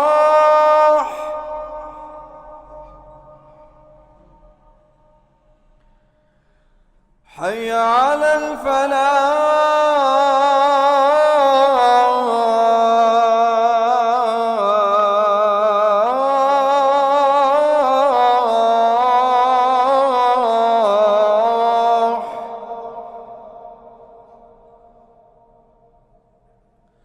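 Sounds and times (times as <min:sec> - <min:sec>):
person chanting solo: 0:00.0 - 0:04.9.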